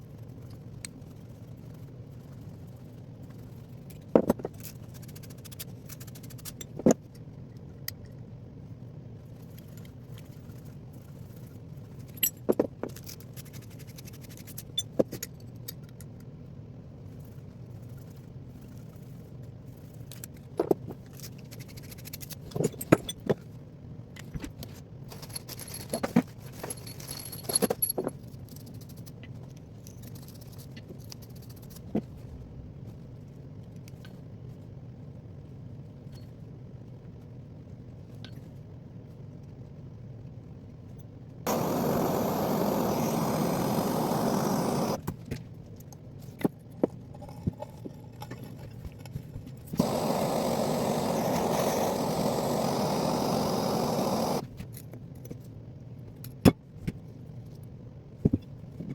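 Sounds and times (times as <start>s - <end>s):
metal tools clinking: 25.1s - 28.2s
steady low hum: 41.5s - 45.2s, 46.6s - 54.5s.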